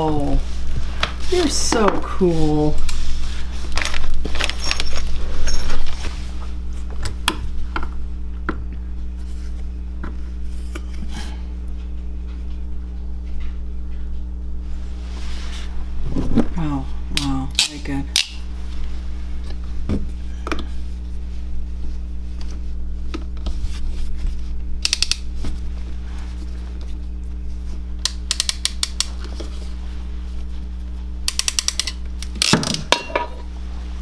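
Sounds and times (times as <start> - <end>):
steady low hum: 0.0 - 34.0
ratcheting hand tool clicking: 24.8 - 25.2, 28.1 - 29.1, 31.3 - 32.8.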